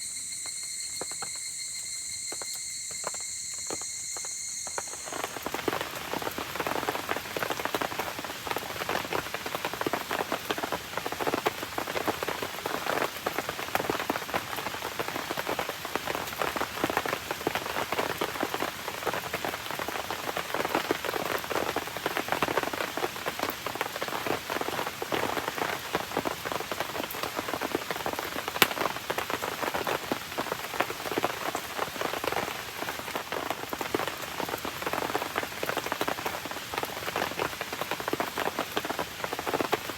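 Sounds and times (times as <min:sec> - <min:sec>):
steady rain pattering: 0:00.0 - 0:39.9
sharp pop: 0:28.6 - 0:28.8.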